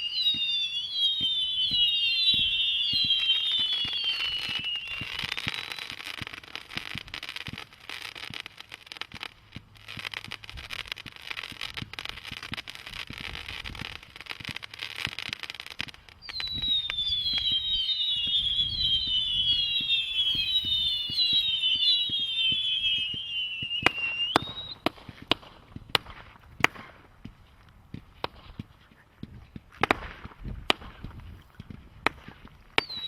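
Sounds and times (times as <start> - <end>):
firework whistles falling in pitch: 0.0 - 7.6, 15.8 - 25.0, 32.7 - 33.0
firework bangs: 0.0 - 33.0
fireworks crackling: 0.0 - 33.0.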